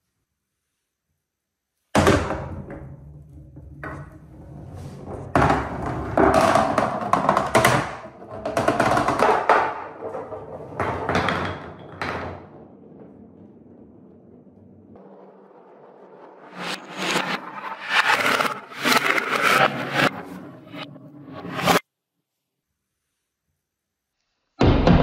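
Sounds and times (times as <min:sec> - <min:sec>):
balls rolling down wooden marble run: 0:02.0 - 0:15.0.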